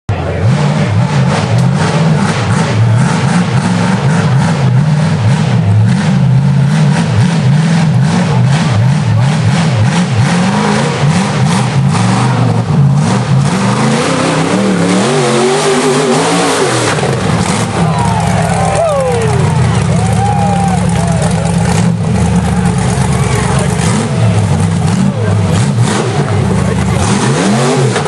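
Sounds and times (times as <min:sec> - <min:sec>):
buggy engine revving: 0:00.1 - 0:28.0.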